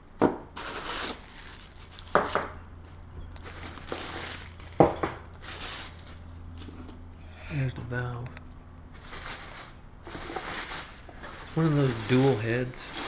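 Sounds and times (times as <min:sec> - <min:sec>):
packaging rustling and crinkling: 0:00.6 - 0:02.5, 0:03.4 - 0:06.7, 0:08.9 - 0:13.0.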